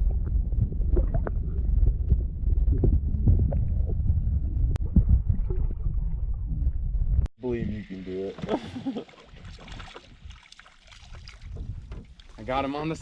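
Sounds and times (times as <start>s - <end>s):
loud low rumble: 0.0s - 7.3s.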